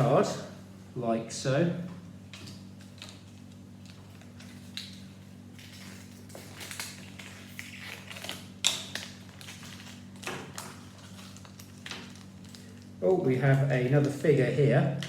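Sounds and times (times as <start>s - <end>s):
steady low hum: 0.0s - 15.0s
packaging crinkling: 2.6s - 14.3s.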